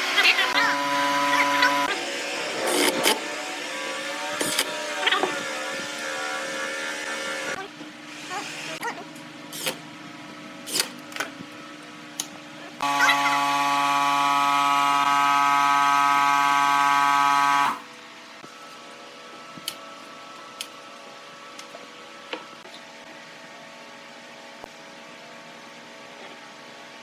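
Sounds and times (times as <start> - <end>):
power tool motor running: 0.0 - 8.8, 12.8 - 17.8.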